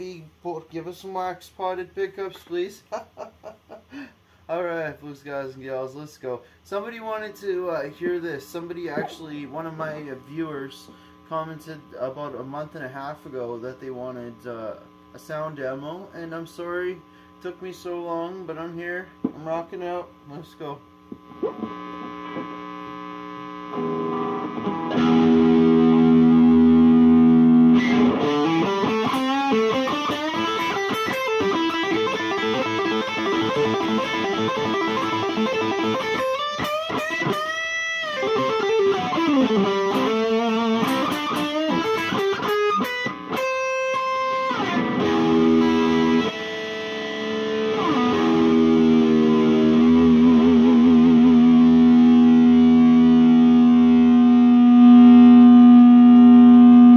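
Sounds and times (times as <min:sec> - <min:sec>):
electric guitar solo: 0:21.1 - 0:56.9.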